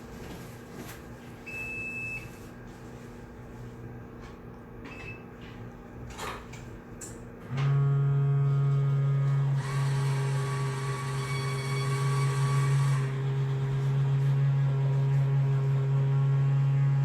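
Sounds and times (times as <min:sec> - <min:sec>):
small electric motor humming: 0:07.8 - 0:17.0.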